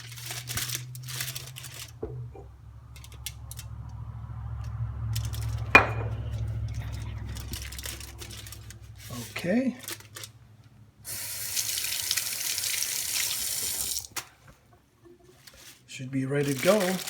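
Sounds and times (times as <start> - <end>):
kitchen rustling and clicks: 0.0 - 10.8, 14.0 - 17.0
steady low hum: 1.9 - 11.1.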